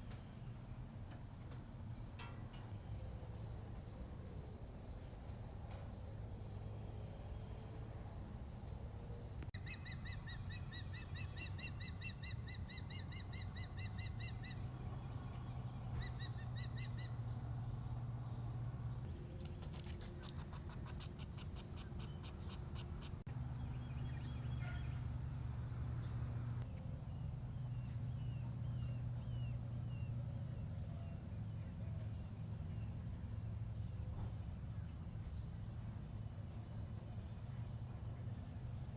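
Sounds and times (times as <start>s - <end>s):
steady low hum: 0.0s - 30.6s
faint bird chirps: 19.3s - 25.0s
bird rattling clicks: 19.5s - 23.2s.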